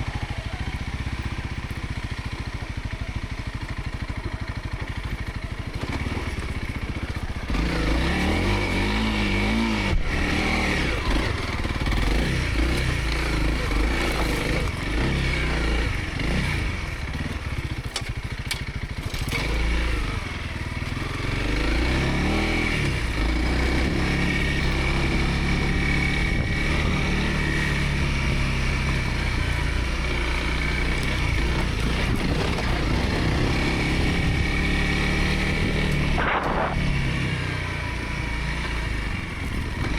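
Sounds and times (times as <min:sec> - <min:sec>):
motorcycle engine revving: 0:00.0 - 0:39.9.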